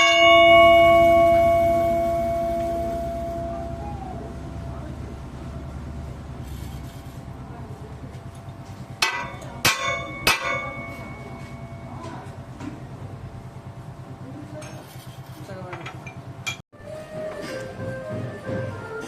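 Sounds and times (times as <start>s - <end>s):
hammer striking steel: 0.0s - 4.8s, 8.8s - 12.8s
machine humming: 0.0s - 14.4s.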